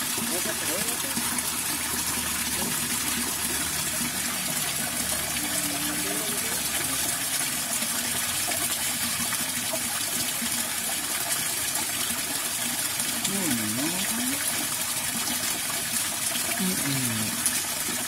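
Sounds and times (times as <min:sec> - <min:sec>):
water rushing in a ditch: 0:00.0 - 0:18.0.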